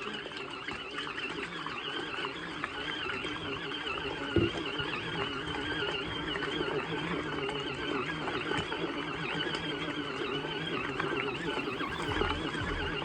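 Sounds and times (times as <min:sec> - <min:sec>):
washing machine motor whining: 0:09.9 - 0:13.0.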